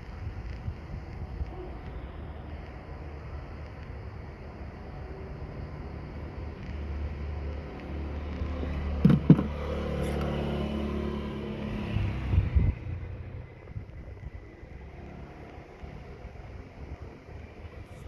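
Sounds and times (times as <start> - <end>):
sharp knocks: 9.0 - 9.6
clunks: 9.0 - 10.4.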